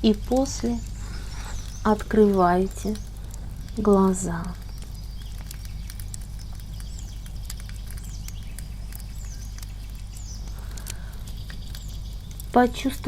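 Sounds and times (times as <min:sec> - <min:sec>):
campfire crackling: 0:00.0 - 0:13.0
steady low rumble: 0:00.0 - 0:13.0.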